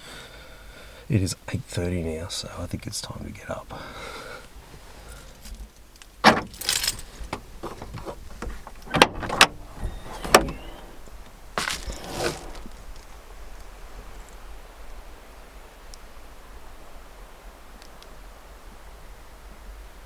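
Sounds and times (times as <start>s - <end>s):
bedding rustling: 4.6s - 13.1s.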